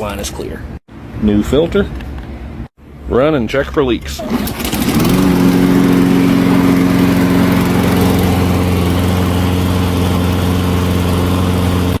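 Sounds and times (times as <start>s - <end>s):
small engine running: 4.3s - 12.0s.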